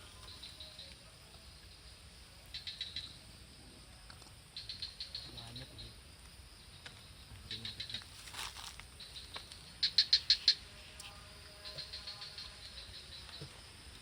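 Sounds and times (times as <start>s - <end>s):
small animal chirping: 7.5s - 11.1s.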